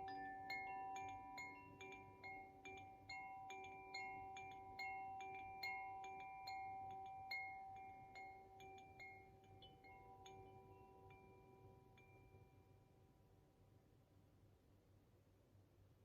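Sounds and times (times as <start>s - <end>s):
wind chime ringing: 0.0s - 12.5s.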